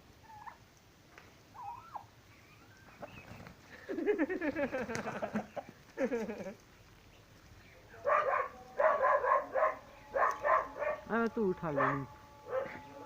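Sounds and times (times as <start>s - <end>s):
turkey calling: 0.2s - 0.6s, 1.5s - 3.8s.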